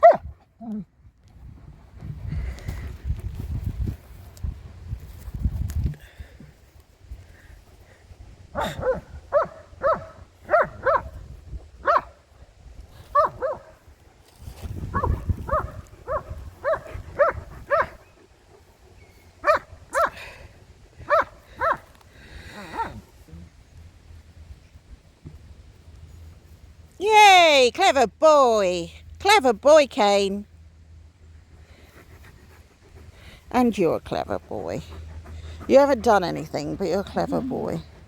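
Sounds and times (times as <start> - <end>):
dog barking: 0.0 - 0.2, 8.6 - 11.1, 11.8 - 12.2, 13.1 - 13.7, 14.9 - 18.0, 19.4 - 20.2, 21.1 - 21.8.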